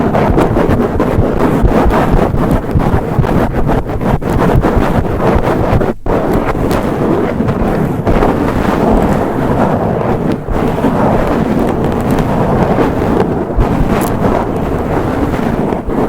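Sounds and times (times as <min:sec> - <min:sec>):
fingernails scratching a microphone: 0:00.0 - 0:16.0.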